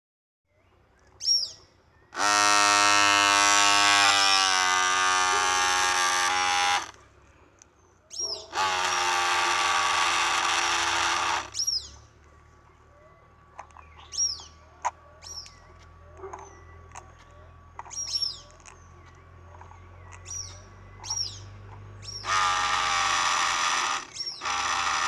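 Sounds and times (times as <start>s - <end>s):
birds chirping: 0.5s - 25.0s
small electric motor buzzing: 2.2s - 7.0s, 8.4s - 11.8s, 21.0s - 25.0s.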